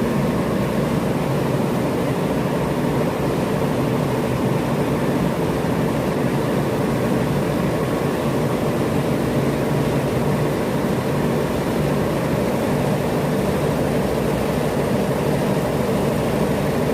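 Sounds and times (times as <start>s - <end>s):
refrigeration machinery humming: 0.0s - 16.9s.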